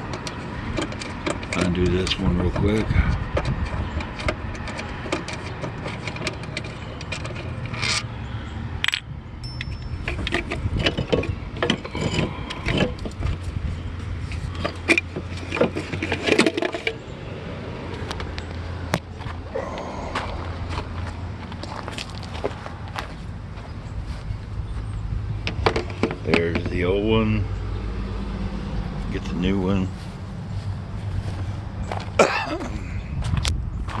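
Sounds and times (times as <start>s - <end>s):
hand tools clicking and rattling: 0.0s - 8.1s, 8.8s - 13.6s, 14.3s - 17.0s.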